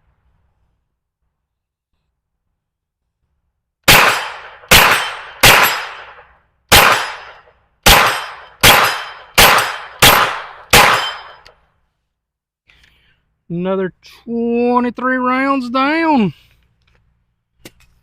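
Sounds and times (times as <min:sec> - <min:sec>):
carbine gunshots with ringing tail: 0:03.9 - 0:11.4.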